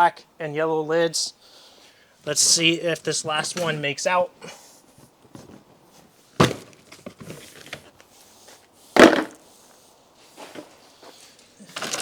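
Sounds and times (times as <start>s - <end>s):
plastic tote clunk: 6.4s - 7.8s, 9.0s - 9.4s
plastic tote clacking: 9.0s - 9.4s.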